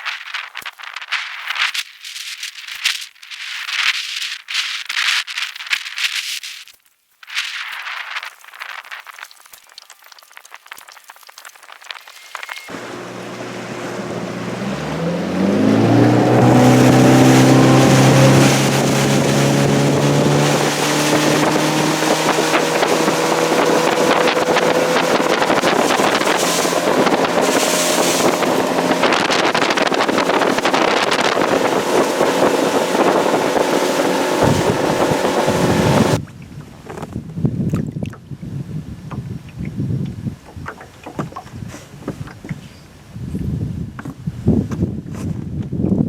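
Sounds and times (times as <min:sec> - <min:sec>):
wind and water rushing: 0:12.6 - 0:44.6
outboard motor revving and running: 0:12.7 - 0:36.2.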